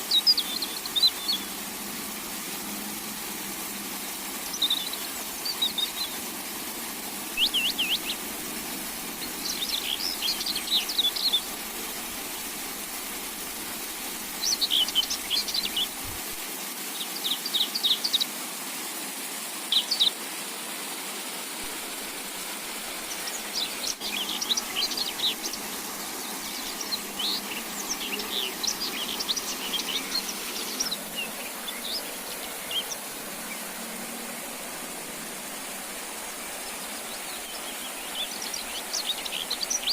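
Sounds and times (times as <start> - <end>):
steady hiss: 0.0 - 39.9
songbird chirping and trilling: 0.1 - 1.6, 4.4 - 6.2, 7.3 - 11.6, 14.3 - 16.0, 23.1 - 34.3.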